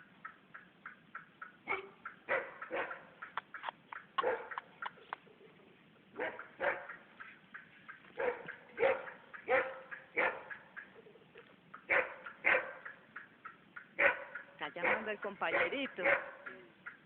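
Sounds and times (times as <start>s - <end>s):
birds calling: 0.0s - 17.0s.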